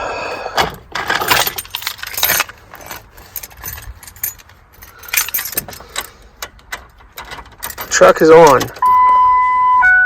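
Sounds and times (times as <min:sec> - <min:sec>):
keys jangling: 0:01.0 - 0:06.2, 0:06.8 - 0:08.8.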